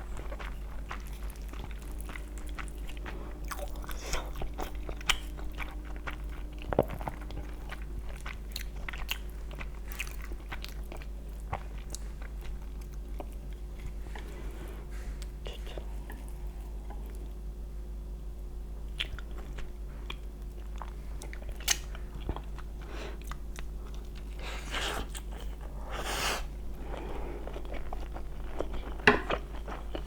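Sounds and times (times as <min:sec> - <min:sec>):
person chewing and biting food: 0:00.0 - 0:14.2, 0:18.9 - 0:30.0.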